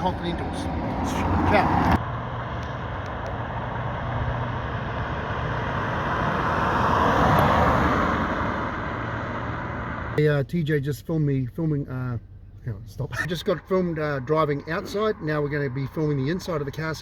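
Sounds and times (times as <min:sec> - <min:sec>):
car driving past: 0:00.0 - 0:10.2.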